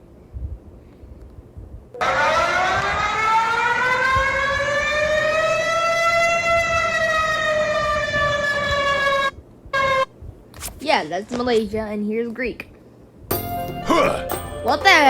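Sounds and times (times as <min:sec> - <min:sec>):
emergency siren wail: 0:02.0 - 0:09.4.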